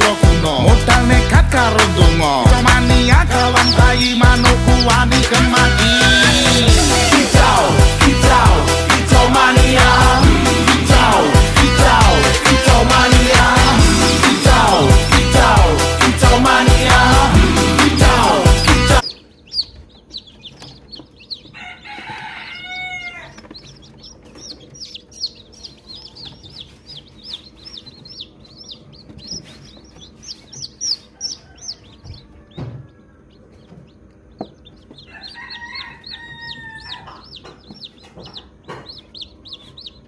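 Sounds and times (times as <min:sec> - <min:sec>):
background music: 0:00.0 - 0:19.0
chicks peeping: 0:00.0 - 0:40.0
adult chicken calling: 0:18.0 - 0:23.8, 0:34.6 - 0:40.0.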